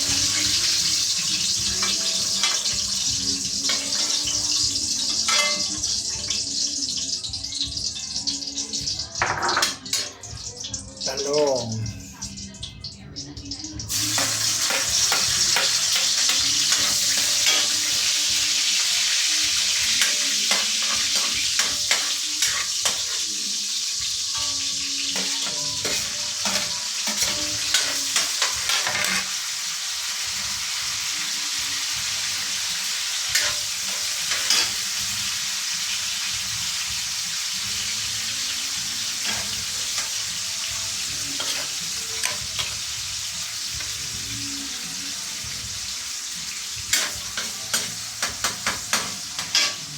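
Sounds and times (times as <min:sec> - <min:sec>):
eggplant sizzling in oil: 0:00.0 - 0:49.9
utensil scraping a pan: 0:24.4 - 0:29.4, 0:41.3 - 0:42.8.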